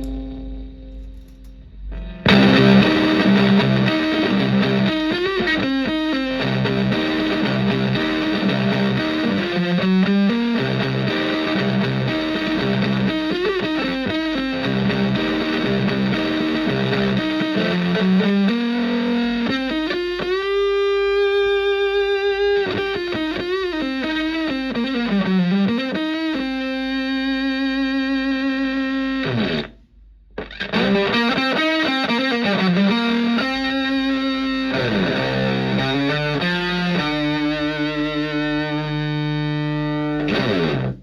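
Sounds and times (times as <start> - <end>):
fuzzed electric guitar riff: 0.0 - 41.0.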